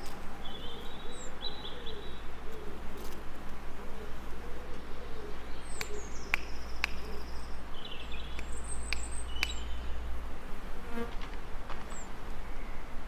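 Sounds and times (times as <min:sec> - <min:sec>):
small birds chirping: 0:00.0 - 0:11.1
background hiss: 0:00.0 - 0:13.0
sharp ticks: 0:05.8 - 0:07.4, 0:08.2 - 0:09.8.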